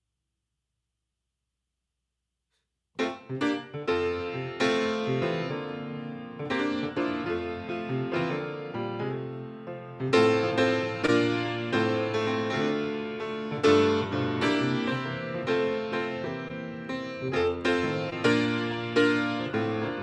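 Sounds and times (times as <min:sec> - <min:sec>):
slow solo piano: 0:03.0 - 0:20.0.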